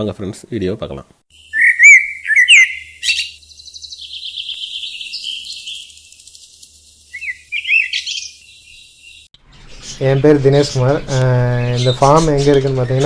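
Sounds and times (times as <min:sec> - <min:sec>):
cage birds chirping: 0:01.3 - 0:13.0.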